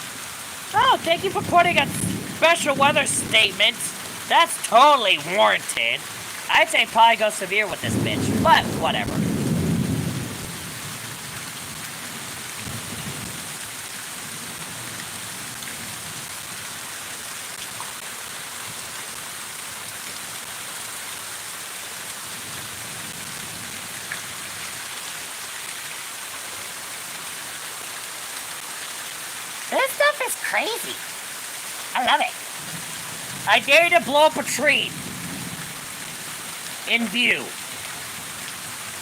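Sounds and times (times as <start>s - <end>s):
heavy rain pouring: 0.0s - 39.0s
thunder rumbling: 0.8s - 7.0s, 7.8s - 11.0s, 32.6s - 36.6s.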